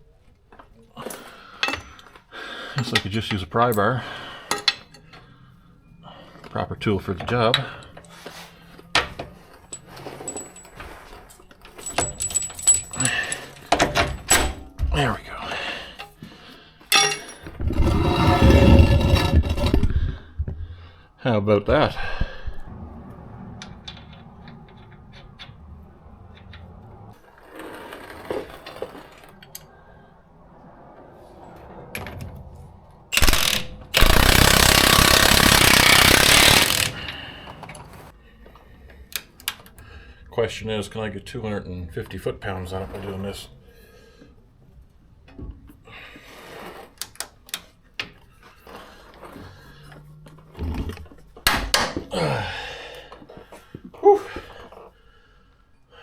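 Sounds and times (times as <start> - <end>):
impact wrench hammering: 16.9 - 17.4, 33.1 - 37.1
pry bar clinking on metal: 16.9 - 18.2.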